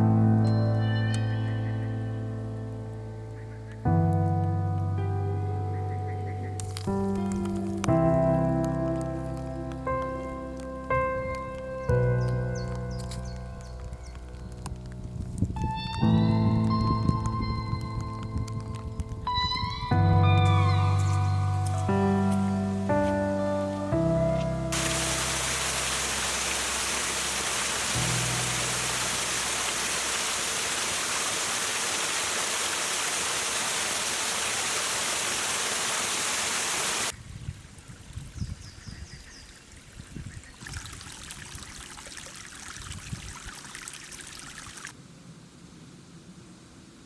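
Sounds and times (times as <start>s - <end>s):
heavy rain falling: 24.7s - 37.1s.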